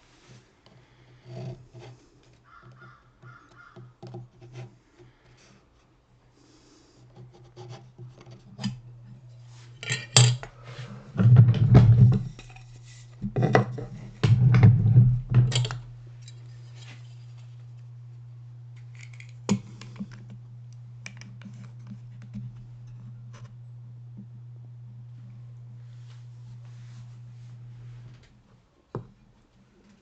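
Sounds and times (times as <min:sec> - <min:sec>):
hand tool scraping wood: 0:00.7 - 0:05.9
low steady hum: 0:04.3 - 0:30.0.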